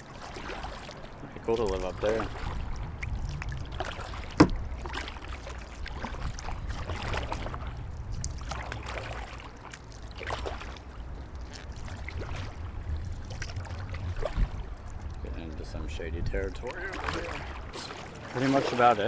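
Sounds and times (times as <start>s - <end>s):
paddle splashing water: 0.0s - 19.0s.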